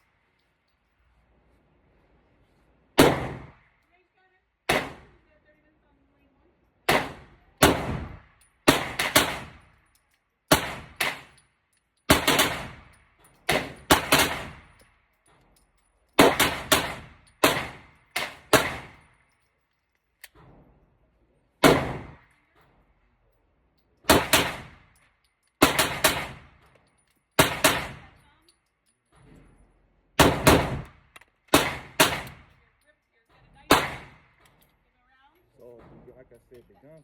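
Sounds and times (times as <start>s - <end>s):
pistol shots with echo: 3.0s - 3.6s, 4.7s - 5.2s, 6.9s - 9.6s, 10.5s - 11.4s, 12.1s - 12.9s, 13.5s - 14.7s, 16.2s - 19.0s, 21.6s - 22.2s, 24.1s - 24.8s, 25.6s - 26.5s, 27.4s - 28.1s, 30.2s - 32.6s, 33.7s - 34.3s.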